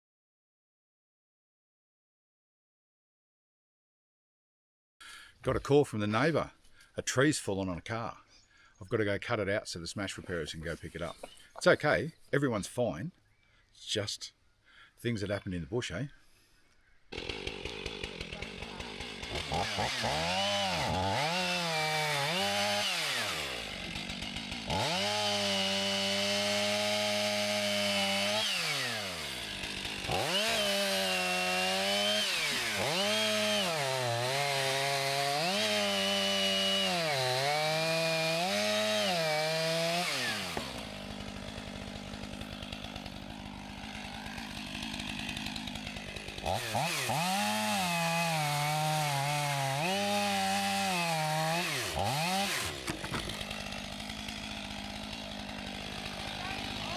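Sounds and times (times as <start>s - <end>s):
chainsaw cutting wood: 17.1s - 56.9s.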